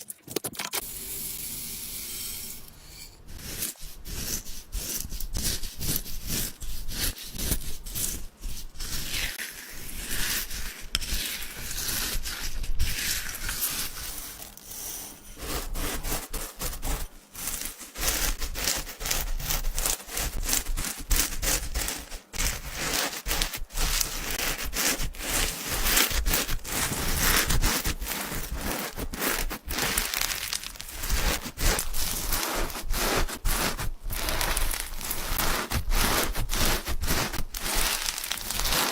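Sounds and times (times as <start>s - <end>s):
hands rubbing slime: 3.2s - 38.9s
slime crackling and popping: 18.3s - 38.9s.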